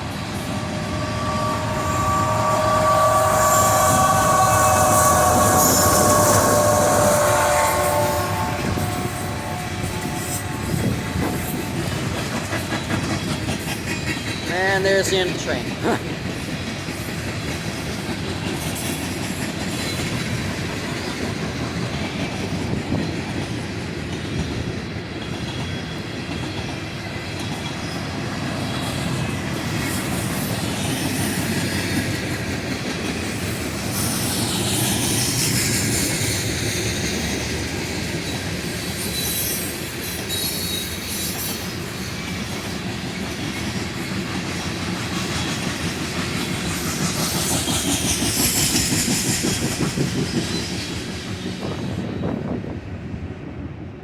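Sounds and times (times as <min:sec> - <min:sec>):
high wheel squeal: 0:00.0 - 0:12.1, 0:38.7 - 0:42.6
train wheels clicking over rail joints: 0:00.0 - 0:52.7.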